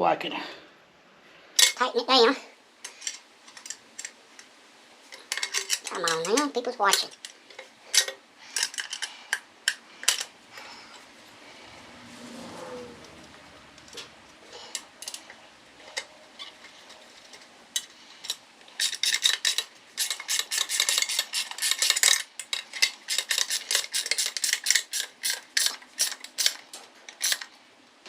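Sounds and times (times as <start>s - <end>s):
wrench clicking and clinking: 17.8s - 26.6s, 27.2s - 27.5s.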